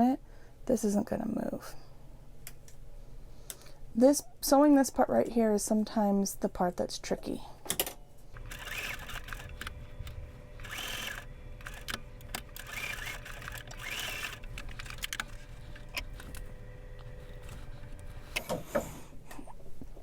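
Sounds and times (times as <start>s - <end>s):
sewing machine motor hum: 8.3s - 18.9s.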